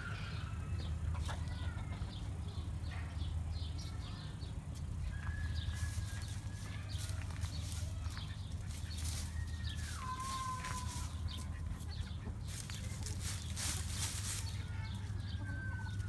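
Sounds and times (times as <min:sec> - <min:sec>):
chickens calling: 0:00.0 - 0:03.9, 0:04.6 - 0:16.0
steady low hum: 0:00.0 - 0:16.0.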